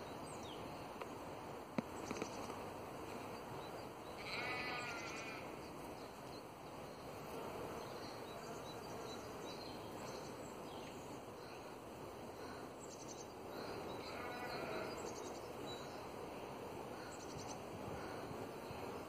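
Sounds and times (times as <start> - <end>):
outdoor background noise: 0.0 - 19.0
sheep bleating: 4.2 - 5.5, 14.0 - 15.0.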